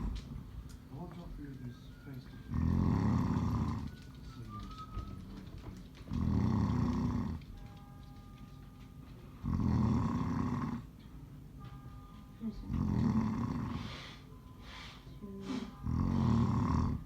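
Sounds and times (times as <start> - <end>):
faint music: 0.0 - 17.0
man snoring: 2.5 - 3.9, 6.2 - 7.4, 9.5 - 10.8, 12.7 - 14.0, 15.5 - 17.0.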